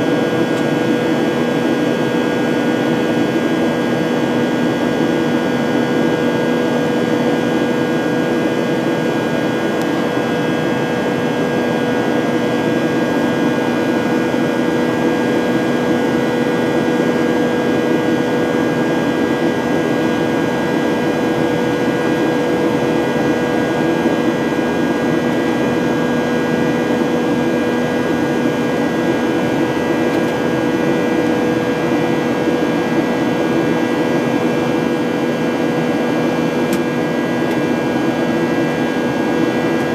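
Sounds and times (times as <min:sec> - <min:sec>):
aircraft cabin engine drone: 0:00.0 - 0:39.9.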